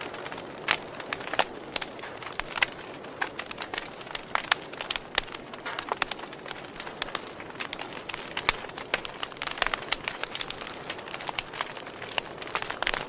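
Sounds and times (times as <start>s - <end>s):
wood fire crackling: 0.0s - 13.0s.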